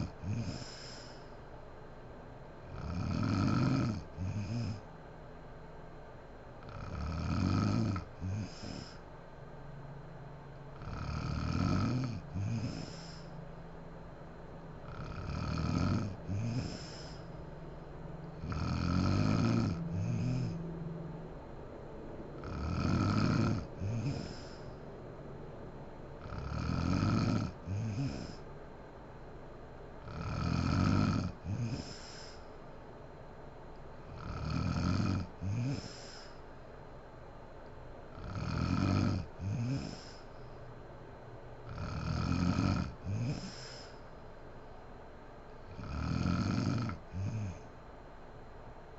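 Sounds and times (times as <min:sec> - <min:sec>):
woman snoring: 0:00.0 - 0:01.3, 0:02.7 - 0:04.8, 0:06.6 - 0:09.0, 0:10.8 - 0:13.3, 0:14.8 - 0:17.3, 0:18.4 - 0:20.6, 0:22.4 - 0:24.8, 0:26.2 - 0:28.4, 0:30.0 - 0:32.4, 0:34.1 - 0:36.4, 0:38.2 - 0:40.3, 0:41.7 - 0:44.0, 0:45.7 - 0:47.7.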